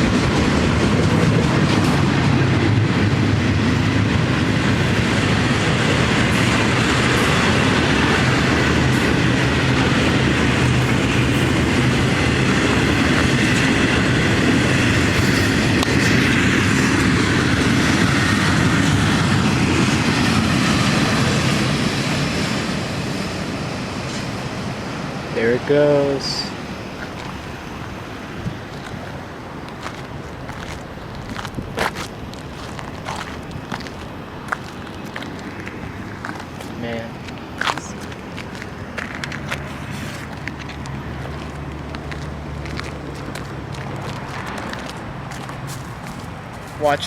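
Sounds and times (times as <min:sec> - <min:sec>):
train wheels rumbling on rails: 0:00.0 - 0:47.0.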